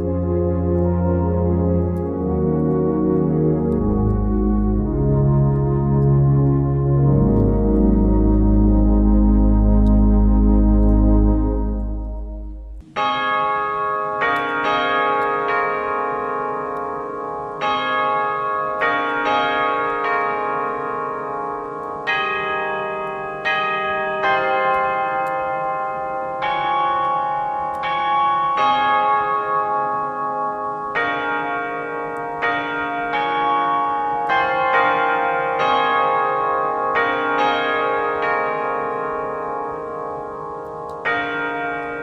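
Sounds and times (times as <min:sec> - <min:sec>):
pipe organ playing a hymn: 0:00.0 - 0:16.0.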